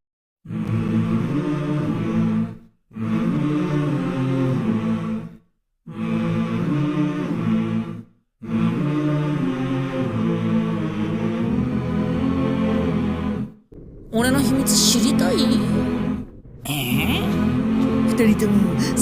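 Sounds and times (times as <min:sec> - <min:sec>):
low chant-like vocal phrase: 0:05.9 - 0:19.0.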